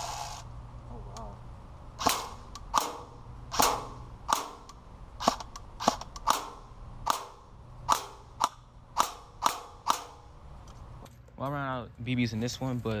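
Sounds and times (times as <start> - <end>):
airsoft rifle shots: 2.0 - 10.4.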